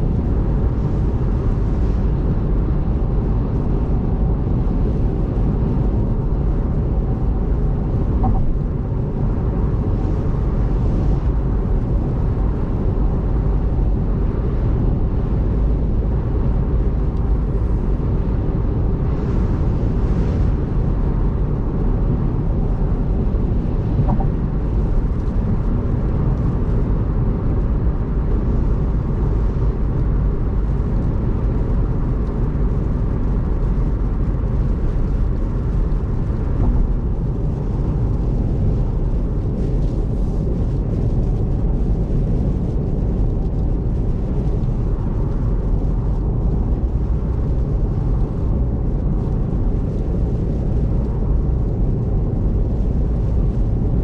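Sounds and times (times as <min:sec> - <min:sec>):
road and tyre rumble: 0:00.0 - 0:54.0.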